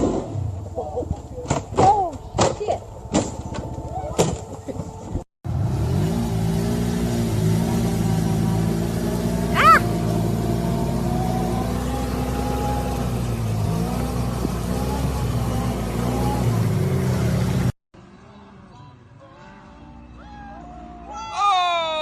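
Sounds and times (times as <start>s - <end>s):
car engine running: 5.5s - 17.8s.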